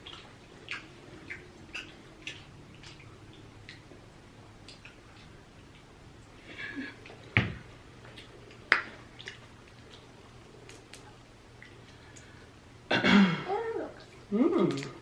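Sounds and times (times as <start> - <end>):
wet chewing: 0.0 - 4.0, 8.0 - 12.5.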